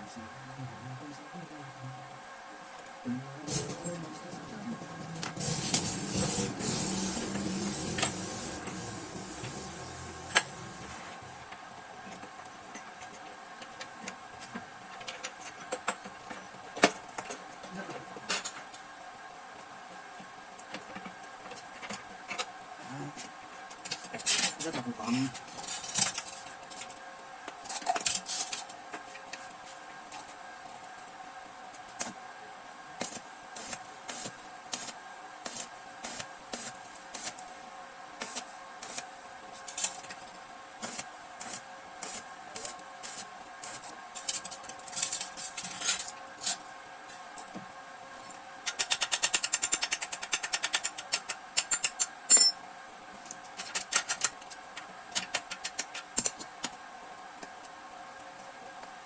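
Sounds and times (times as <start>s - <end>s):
faint steady hum: 0.0s - 59.0s
hand tools clicking on metal: 48.7s - 52.5s.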